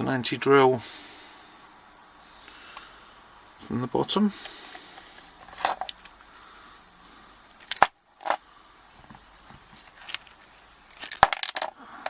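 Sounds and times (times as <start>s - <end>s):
padlock parts clicking and clinking: 5.4s - 6.3s, 7.5s - 8.4s, 9.9s - 11.8s.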